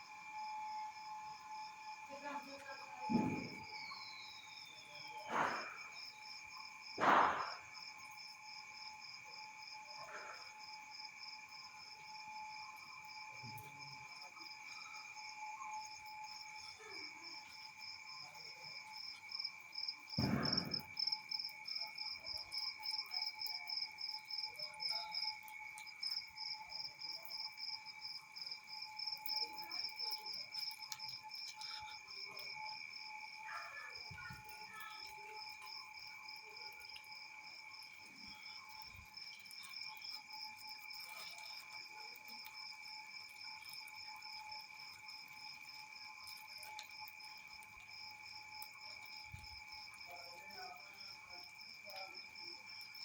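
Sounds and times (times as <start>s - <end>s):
crickets chirping: 0.0s - 53.0s
high insect drones: 0.0s - 53.0s
dull thump: 3.1s - 3.8s, 5.3s - 5.8s, 7.0s - 7.6s, 20.2s - 21.0s.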